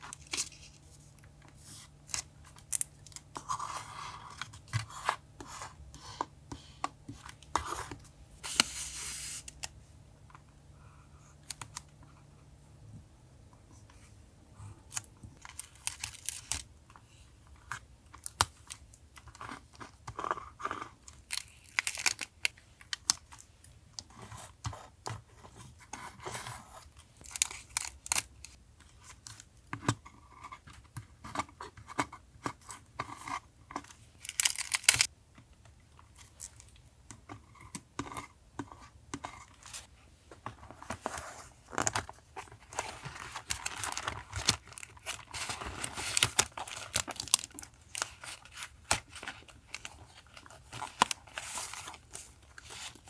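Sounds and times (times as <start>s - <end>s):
paper rustling: 40.4s - 53.0s
paper crinkling and tearing: 40.9s - 53.0s.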